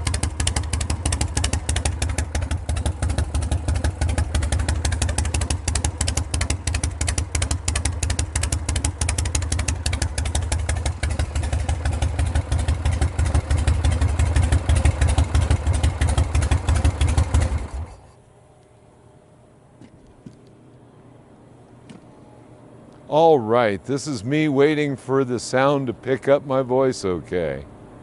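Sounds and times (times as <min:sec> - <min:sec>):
motorcycle engine running: 0:00.0 - 0:18.2.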